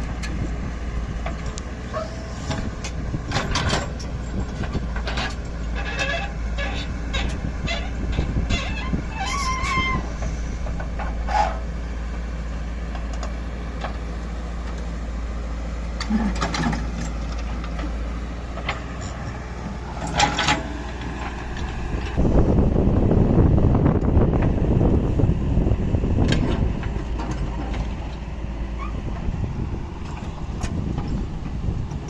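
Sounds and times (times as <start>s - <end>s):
diesel engine rumbling: 0.0s - 32.0s
clanks and knocks: 1.2s - 11.6s.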